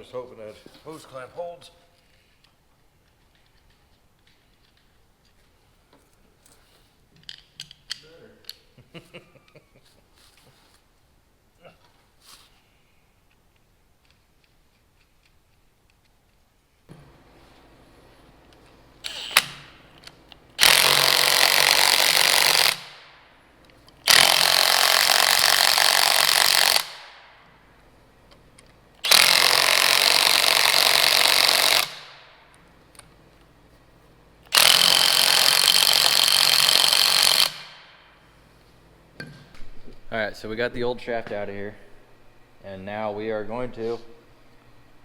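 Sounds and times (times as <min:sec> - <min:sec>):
hammering power tool: 0:19.0 - 0:19.8, 0:20.6 - 0:23.0, 0:24.0 - 0:27.2, 0:29.0 - 0:32.2, 0:34.5 - 0:37.9.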